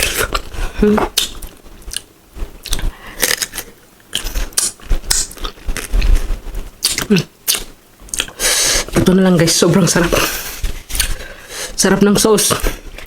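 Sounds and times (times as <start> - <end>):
crunchy bites and chewing: 1.1 - 6.2
mouth sounds: 6.8 - 9.1.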